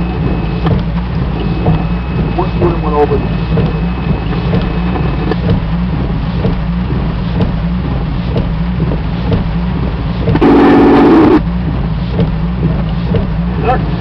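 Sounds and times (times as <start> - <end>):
low engine drone: 0.0 - 14.0.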